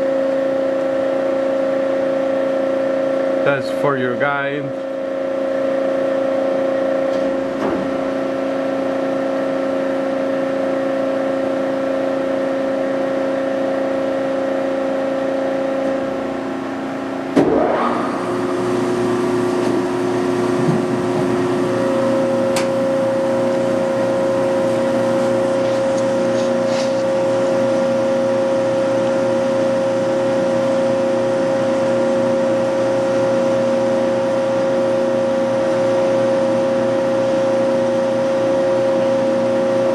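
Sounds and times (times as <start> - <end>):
bandsaw running hum: 0.0 - 39.9.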